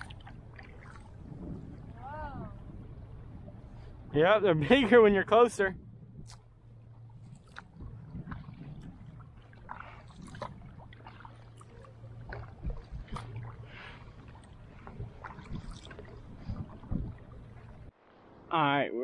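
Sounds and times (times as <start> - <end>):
paddle splashing water: 0.0 - 2.7, 6.2 - 18.0
steady low hum: 0.0 - 18.6.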